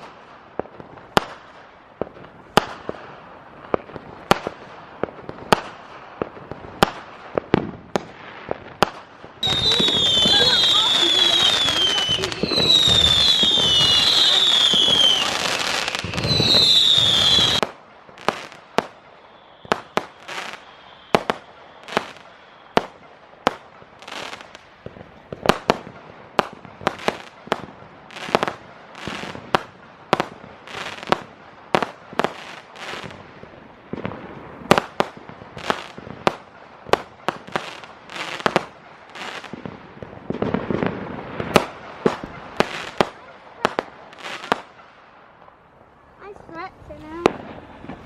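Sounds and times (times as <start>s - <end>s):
fireworks bangs and cracks: 0.0s - 48.0s
falling firework whistle: 9.4s - 17.7s, 18.4s - 23.2s.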